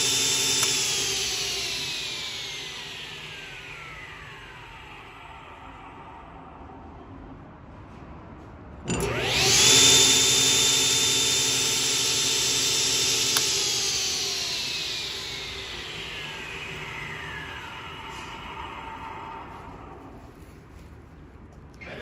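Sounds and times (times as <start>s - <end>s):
table saw whine: 0.0s - 6.9s, 8.9s - 20.4s
saw switch click: 0.5s - 1.0s, 13.2s - 13.7s.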